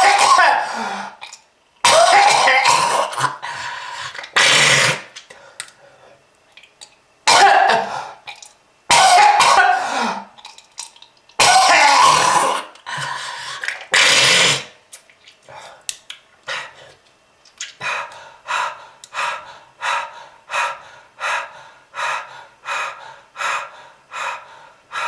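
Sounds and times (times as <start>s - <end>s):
person coughing harshly: 0.0s - 1.2s, 1.8s - 3.4s, 7.3s - 8.1s, 8.9s - 10.3s, 11.4s - 12.7s.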